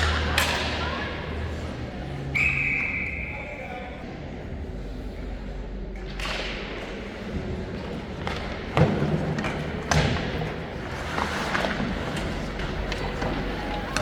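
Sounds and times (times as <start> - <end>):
skate blades scraping ice: 7.6 - 14.0
thuds against rink boards: 8.2 - 14.0.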